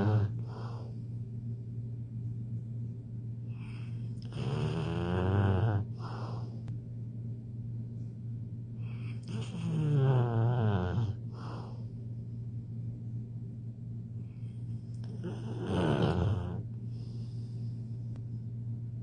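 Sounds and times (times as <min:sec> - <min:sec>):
person snoring: 0:00.0 - 0:00.9, 0:03.6 - 0:06.4, 0:08.9 - 0:11.8, 0:15.0 - 0:16.6
quiet breaths: 0:00.0 - 0:02.4, 0:03.3 - 0:07.1, 0:07.9 - 0:12.8, 0:14.0 - 0:19.0
steady low hum: 0:00.0 - 0:19.0.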